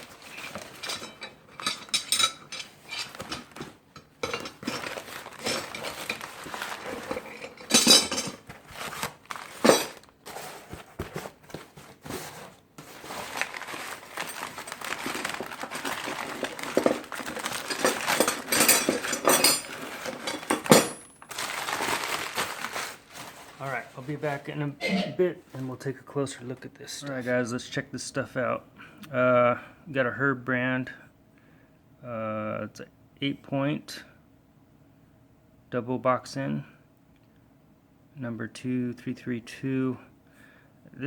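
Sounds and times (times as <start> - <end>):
steel wrenches clinking: 0.3 - 6.2, 7.0 - 8.4, 17.6 - 21.1
wrapping crinkling: 4.4 - 7.8, 8.4 - 24.5.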